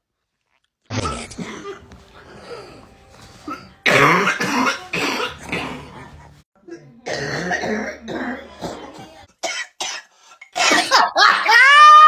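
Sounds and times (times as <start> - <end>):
person coughing: 0.9 - 1.9, 3.4 - 5.9, 7.1 - 11.2.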